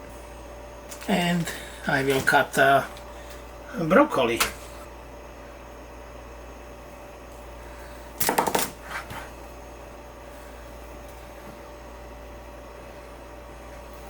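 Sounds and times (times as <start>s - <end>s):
steady hum: 0.0s - 14.0s
knife chopping on cutting board: 8.2s - 9.2s.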